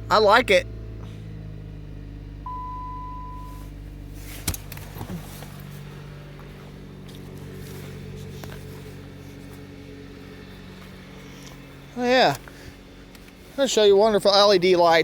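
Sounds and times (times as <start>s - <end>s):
car engine idling: 0.0s - 15.0s
short beep: 2.4s - 3.7s.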